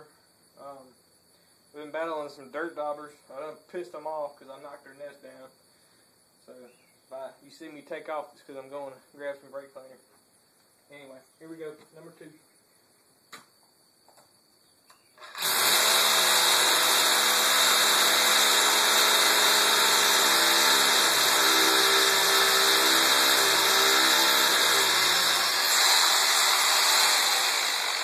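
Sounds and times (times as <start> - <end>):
hammer drill boring into concrete: 15.2 - 28.0.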